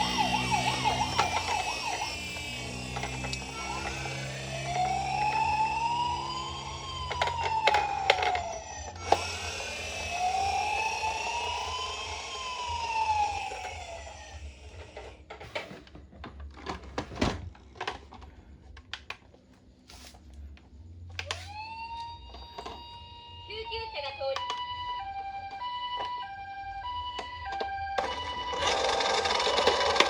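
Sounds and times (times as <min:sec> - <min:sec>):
toy electronic siren wailing: 0:00.0 - 0:15.0, 0:21.2 - 0:30.0.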